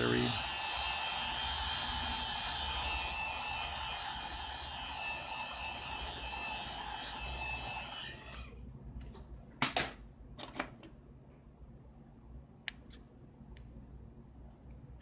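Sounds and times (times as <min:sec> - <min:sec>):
hot-air tool hissing: 0:00.0 - 0:08.3.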